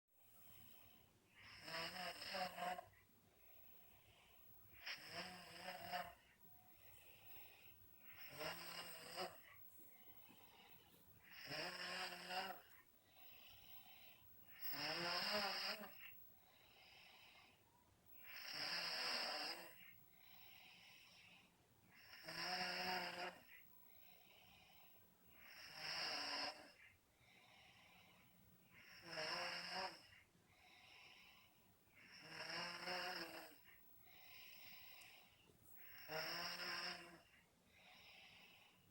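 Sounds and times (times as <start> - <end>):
person snoring loudly: 1.5 - 2.9, 4.8 - 6.2, 8.1 - 9.5, 11.2 - 12.7, 14.5 - 16.1.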